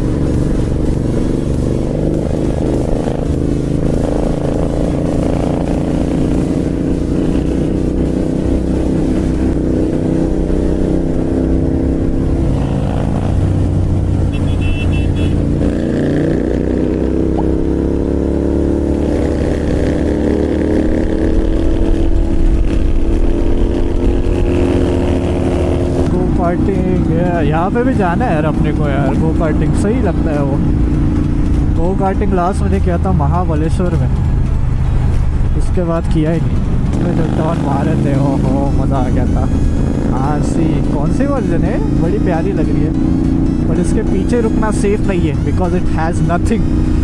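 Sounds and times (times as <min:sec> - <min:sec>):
motorcycle engine accelerating: 0:00.0 - 0:47.0.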